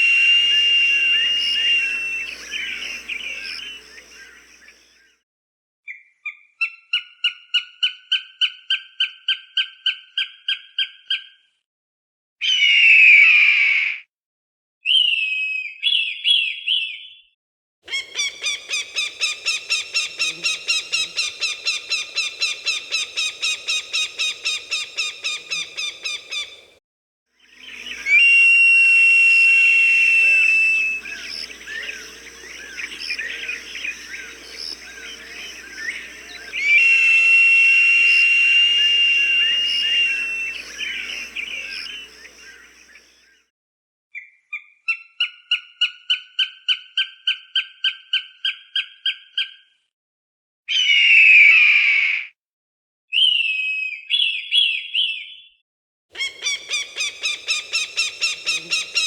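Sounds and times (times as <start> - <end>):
hawk screams: 0.0 - 4.1, 27.6 - 42.5
hawk calls: 0.0 - 4.8, 17.9 - 26.7, 27.5 - 43.0, 56.2 - 59.0
small bird chirps: 0.0 - 4.8, 17.9 - 26.7, 30.0 - 43.0, 56.2 - 59.0.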